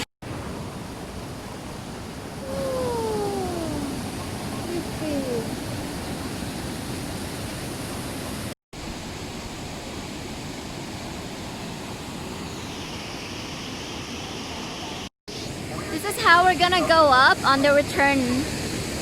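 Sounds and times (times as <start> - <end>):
waterfall rushing: 2.4 - 8.5.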